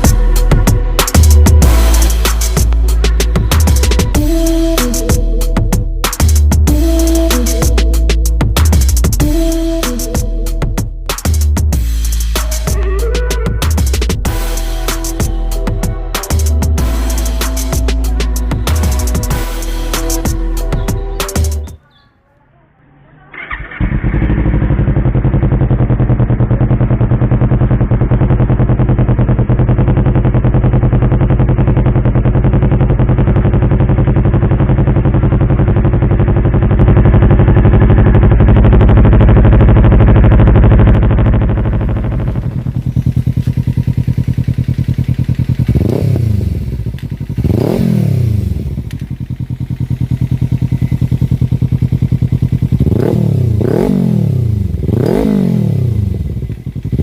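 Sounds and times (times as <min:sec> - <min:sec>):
motorcycle exhaust idling: 0:00.0 - 0:21.8, 0:23.1 - 0:57.0
motorcycle throttle blips: 0:23.0 - 0:57.0.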